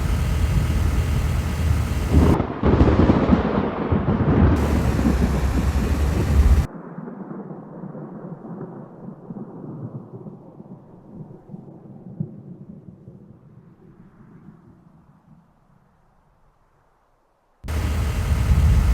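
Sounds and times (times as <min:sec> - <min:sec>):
thunder rumbling: 0:00.0 - 0:08.7, 0:17.7 - 0:18.9.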